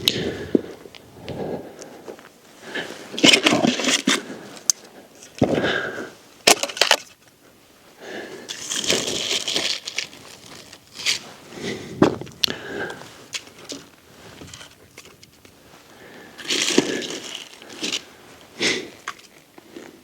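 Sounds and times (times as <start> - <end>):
dry sticks snapping: 16.4 - 18.1.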